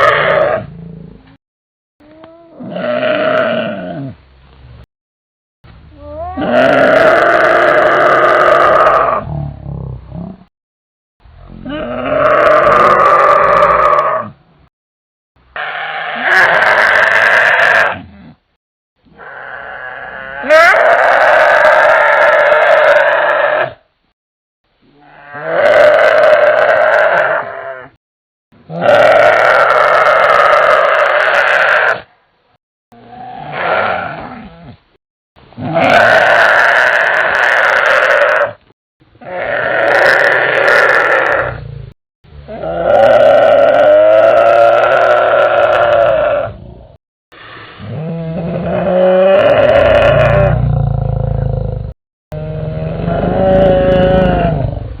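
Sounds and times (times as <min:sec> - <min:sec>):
loud dinosaur roar: 0:00.0 - 0:00.8, 0:06.4 - 0:10.4, 0:11.4 - 0:14.4, 0:15.6 - 0:18.4, 0:19.2 - 0:23.8, 0:25.0 - 0:28.0, 0:28.7 - 0:32.1, 0:33.0 - 0:34.8, 0:35.6 - 0:38.6, 0:39.2 - 0:47.0, 0:47.8 - 0:55.0.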